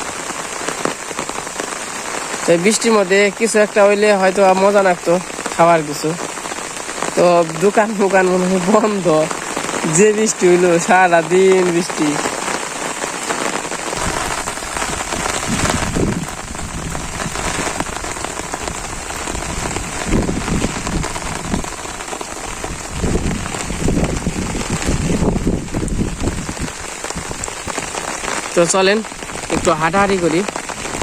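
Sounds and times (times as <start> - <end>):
steady rain hiss: 0.0 - 31.0
low rumbles: 14.0 - 28.0.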